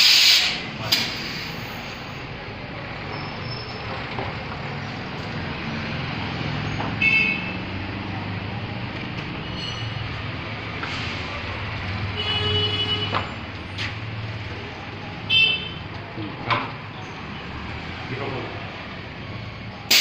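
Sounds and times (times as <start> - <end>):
pneumatic air hiss: 0.0 - 1.9.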